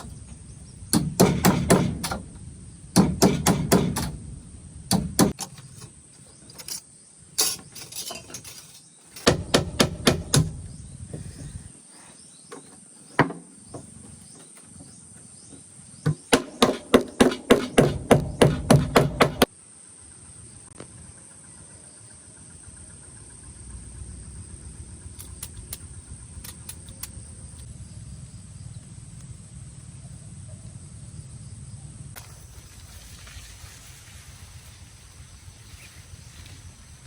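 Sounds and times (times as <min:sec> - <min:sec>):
insects trilling: 0:00.0 - 0:37.0
sharp knocks: 0:00.9 - 0:02.3, 0:03.0 - 0:04.3, 0:04.9 - 0:05.6, 0:09.2 - 0:11.6, 0:16.0 - 0:19.5.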